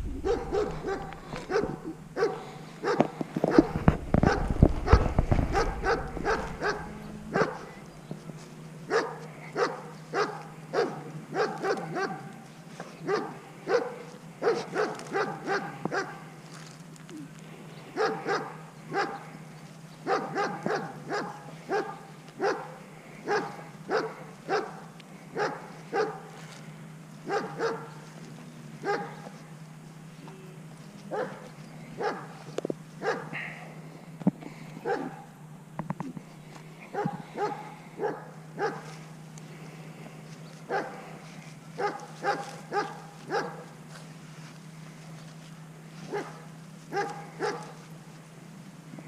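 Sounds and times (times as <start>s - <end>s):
low hum: 0.0s - 49.0s
dog barking: 0.1s - 7.8s, 8.9s - 12.4s, 13.0s - 16.3s, 18.0s - 19.3s, 20.0s - 26.3s, 27.2s - 28.0s, 28.8s - 29.3s, 31.1s - 32.4s, 33.0s - 33.5s, 34.8s - 35.3s, 36.9s - 38.9s, 40.7s - 41.0s, 41.8s - 43.7s, 46.1s - 47.8s.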